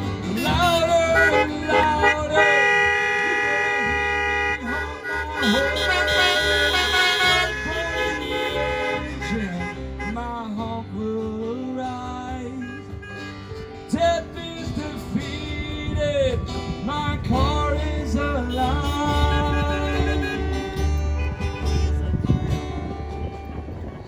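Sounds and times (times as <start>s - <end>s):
country song with acoustic guitar: 0.0s - 24.0s
person singing: 0.3s - 4.0s, 4.6s - 13.0s, 13.9s - 20.7s.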